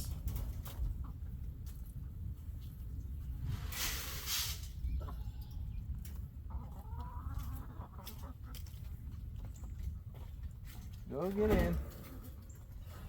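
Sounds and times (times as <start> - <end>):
brief rushing hiss: 3.4 - 4.8
hens clucking: 4.7 - 13.0.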